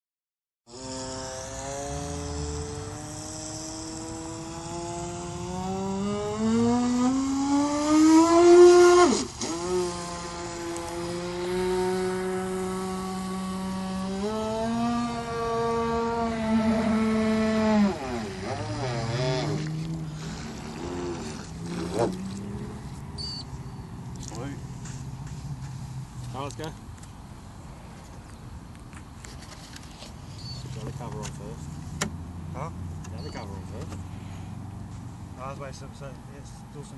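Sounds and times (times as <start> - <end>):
remote-control boat motor whining: 0.7 - 23.4.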